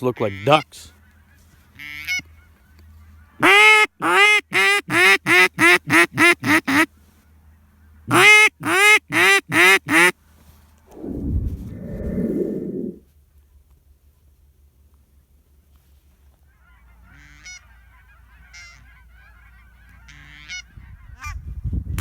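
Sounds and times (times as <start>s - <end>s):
goose honking: 3.3s - 6.9s, 8.1s - 10.1s, 16.5s - 20.8s
low rumble: 10.9s - 13.0s.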